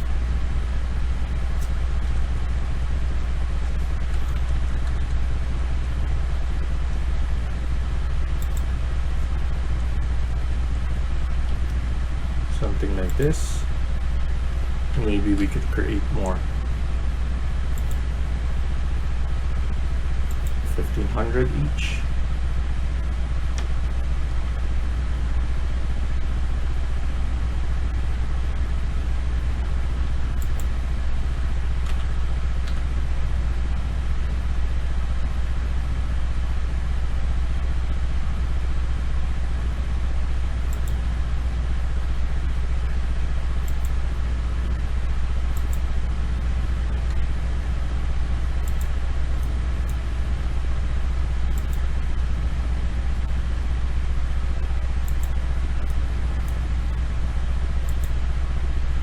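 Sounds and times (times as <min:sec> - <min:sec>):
low hum and rumble: 0:00.0 - 0:59.0
faint clicks: 0:17.7 - 0:18.0, 0:20.3 - 0:20.8, 0:30.4 - 0:30.8, 0:40.7 - 0:41.1, 0:43.6 - 0:44.0, 0:45.6 - 0:45.8, 0:48.6 - 0:50.0, 0:51.5 - 0:51.8, 0:55.0 - 0:57.0, 0:57.8 - 0:58.2.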